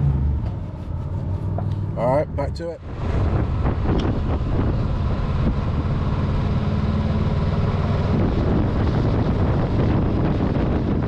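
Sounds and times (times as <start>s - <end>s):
wind noise on microphone: 2.8s - 11.0s.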